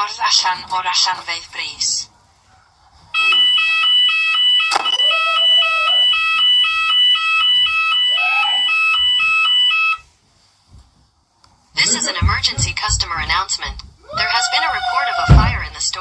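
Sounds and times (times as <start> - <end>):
fire alarm high-low tone: 3.2 - 10.1
spoken warnings: 11.8 - 16.0.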